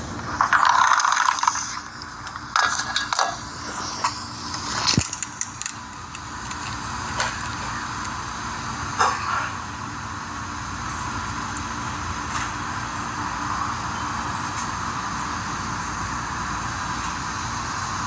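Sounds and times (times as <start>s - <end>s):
traffic hum: 0.0s - 18.0s
person coughing: 9.0s - 9.6s.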